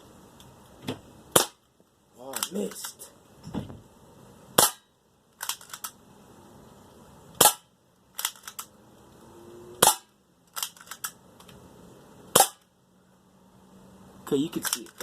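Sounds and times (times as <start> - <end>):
bb pistol shots: 1.3 - 1.6, 4.6 - 6.0, 7.4 - 8.7, 9.8 - 11.1, 12.3 - 12.7.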